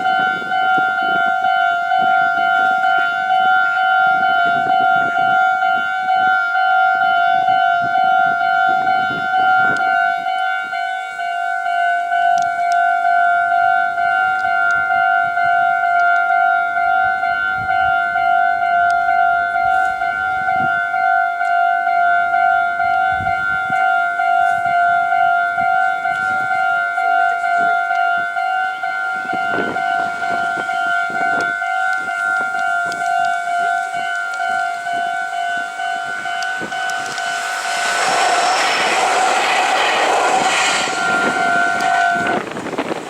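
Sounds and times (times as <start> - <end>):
level-crossing warning bell: 0.0 - 42.4
passing train rumble and clatter: 35.2 - 43.0.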